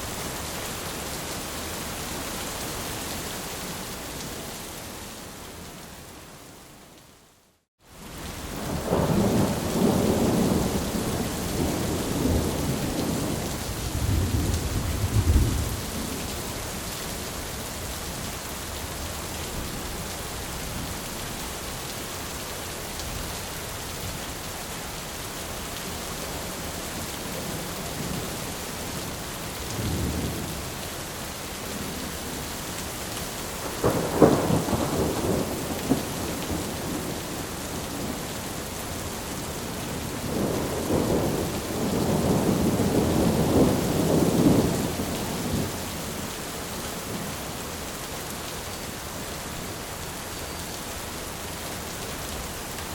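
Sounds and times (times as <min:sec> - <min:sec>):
heavy rain pouring: 0:07.8 - 0:52.9
thunder rumbling: 0:33.6 - 0:38.2, 0:40.0 - 0:45.7.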